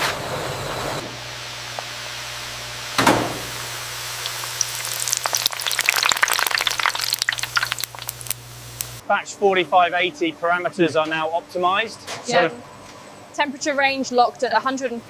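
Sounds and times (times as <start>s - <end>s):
low machine hum: 0.0s - 15.0s
noodles sizzling in hot oil: 1.2s - 9.0s.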